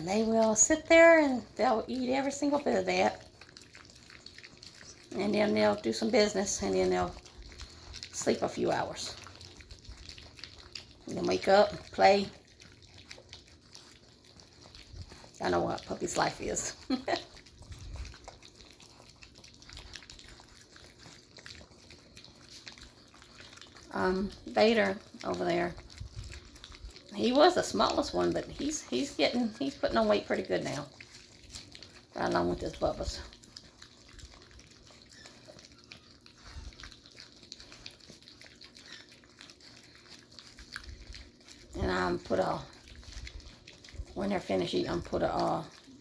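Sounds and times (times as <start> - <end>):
puppies lapping food: 0.0 - 46.0.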